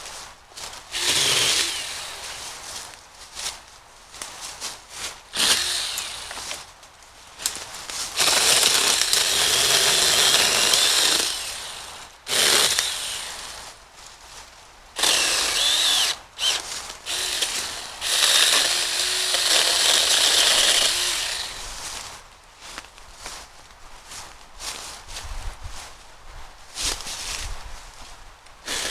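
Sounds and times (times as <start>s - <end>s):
mini chainsaw cutting brush: 0.9s - 2.6s, 5.3s - 6.7s, 7.4s - 13.8s, 15.0s - 21.9s, 28.6s - 28.9s.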